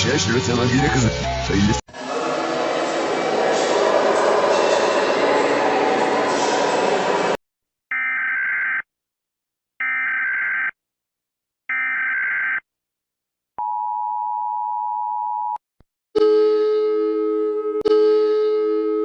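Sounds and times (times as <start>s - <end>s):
long steady lower tone: 16.2s - 19.0s.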